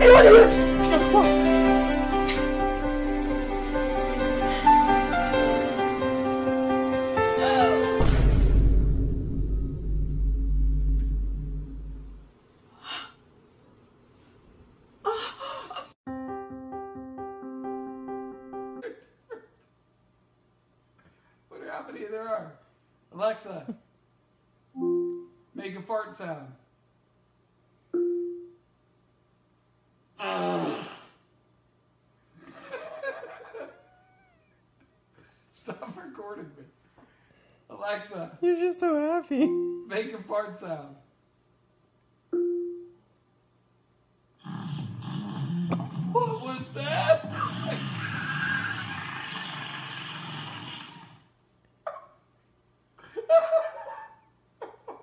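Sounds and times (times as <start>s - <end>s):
noisy low buzz: 8.0s - 12.8s
fart sound effect: 30.2s - 31.2s.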